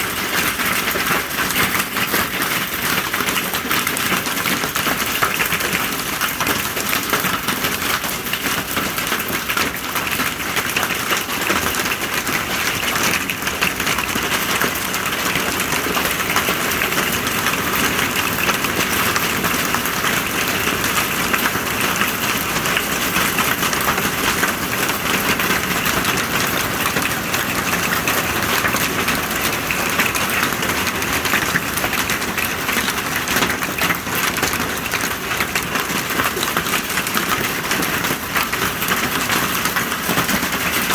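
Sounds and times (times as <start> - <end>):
hail and heavy rain pelting: 0.0 - 40.9.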